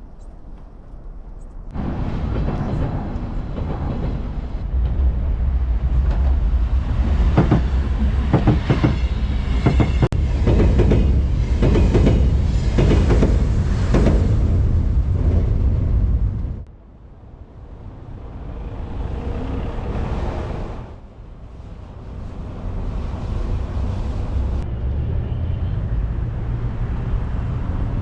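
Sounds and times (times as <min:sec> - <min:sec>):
rail vehicle rumble: 0:00.0 - 0:28.0.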